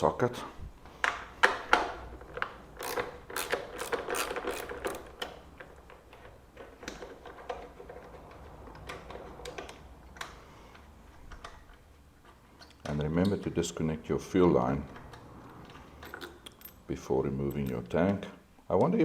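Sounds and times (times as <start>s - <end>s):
socket ratchet clicking: 2.8s - 5.4s.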